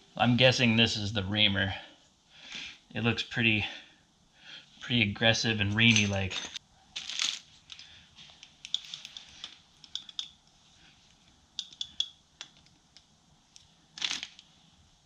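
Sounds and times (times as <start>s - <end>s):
tools clicking and tapping: 8.5s - 10.4s, 11.6s - 13.7s.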